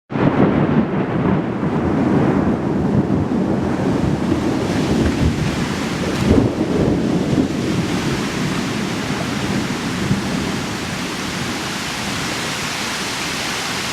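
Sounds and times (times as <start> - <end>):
low rumble of thunder: 0.1 - 12.6
rain hissing: 1.7 - 13.9.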